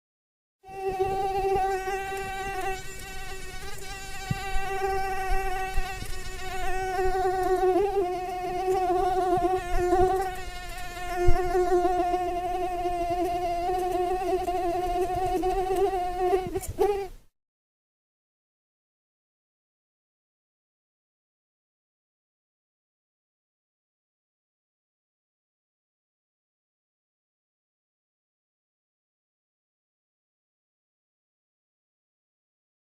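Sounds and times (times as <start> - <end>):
mosquito wing whine: 0.7 - 17.2.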